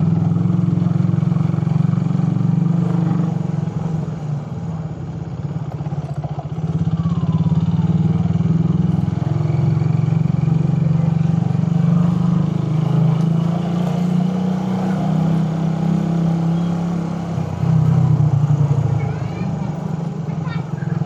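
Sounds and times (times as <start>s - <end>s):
motorcycle engine running: 0.0s - 21.0s.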